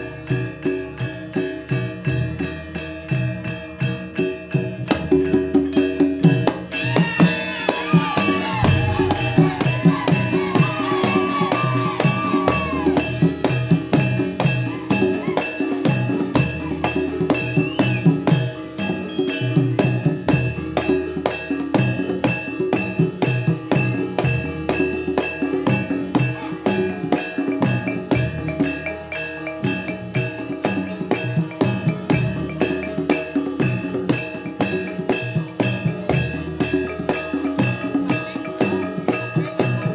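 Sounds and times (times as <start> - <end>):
drums beating busy rhythm: 0.0 - 39.9
ringing tuned metal percussion: 0.0 - 39.9
wavering melodic line: 5.9 - 22.7.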